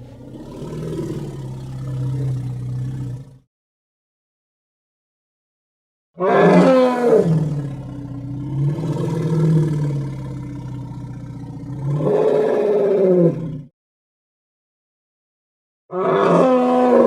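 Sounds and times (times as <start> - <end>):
creature roaring: 0.0 - 3.4, 6.2 - 10.9, 15.9 - 17.0.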